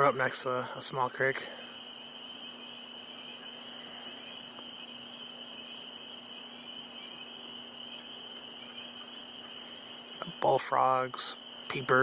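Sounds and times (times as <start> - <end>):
faint low hum: 0.0 - 12.0
frogs and insects trilling: 0.0 - 12.0.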